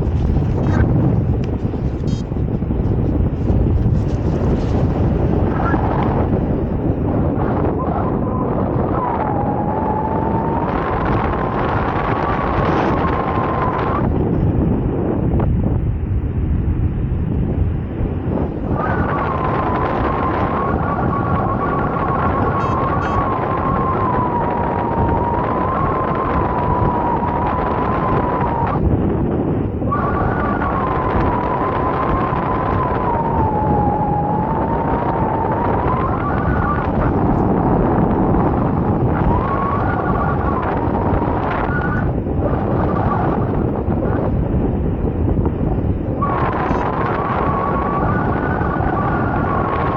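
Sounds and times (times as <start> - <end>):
continuous sliding tone: 0.0 - 14.5
wind buffeting microphone: 0.0 - 49.9.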